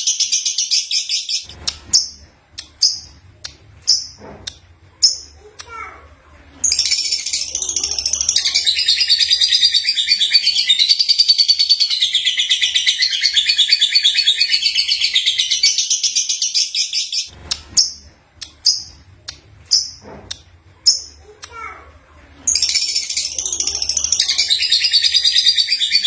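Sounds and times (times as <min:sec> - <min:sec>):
lovebird chattering and chirping: 0:06.6 - 0:19.0, 0:22.5 - 0:26.0.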